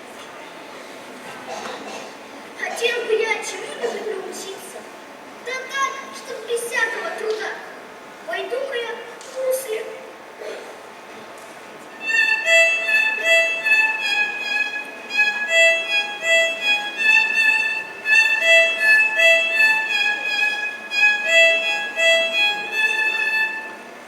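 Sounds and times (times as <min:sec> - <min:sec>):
instrumental melody of short notes: 0:12.0 - 0:24.0.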